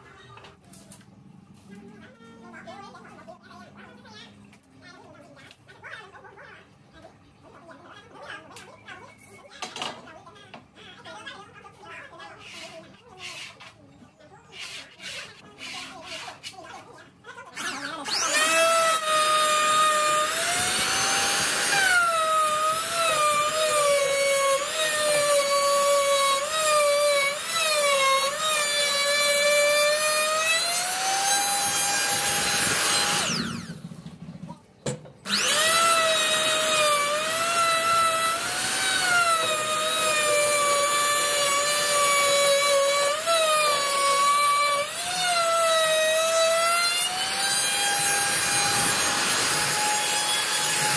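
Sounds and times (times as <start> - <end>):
power tool cutting wood: 17.6 - 34.1, 35.2 - 50.9.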